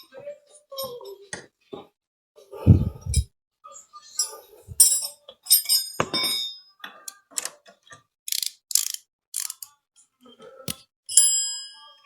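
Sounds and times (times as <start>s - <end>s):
ratchet clicking: 8.3s - 9.7s.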